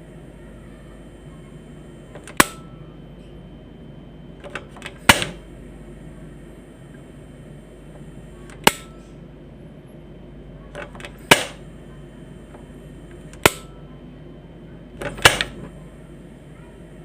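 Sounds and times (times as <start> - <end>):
igniter clicks: 2.0 - 2.8, 4.4 - 5.5, 7.8 - 9.2, 10.7 - 11.7, 12.4 - 13.8, 15.0 - 15.8
stove knob clicks: 4.4 - 5.4, 8.5 - 8.9, 10.8 - 11.6, 13.3 - 13.7, 15.0 - 15.6.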